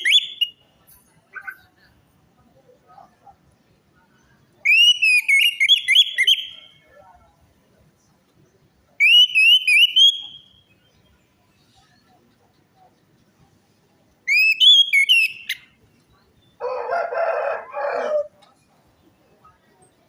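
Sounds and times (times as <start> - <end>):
thrush singing whistled notes: 0.0 - 0.7, 4.6 - 6.9, 9.0 - 11.2, 14.2 - 16.6.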